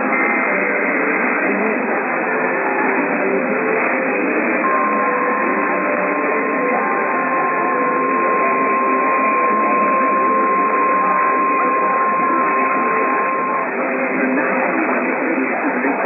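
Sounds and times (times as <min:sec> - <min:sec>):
faint radio voices: 0:00.0 - 0:16.0
steady alarm beep: 0:04.0 - 0:15.3.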